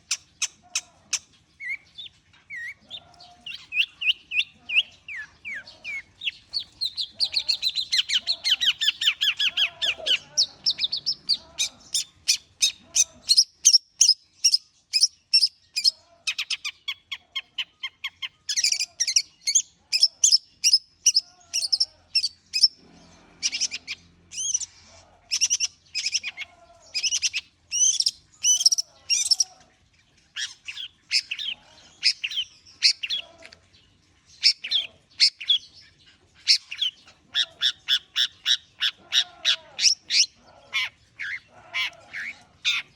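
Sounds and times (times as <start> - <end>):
shrike chattering song: 0.0 - 22.8, 23.4 - 29.5.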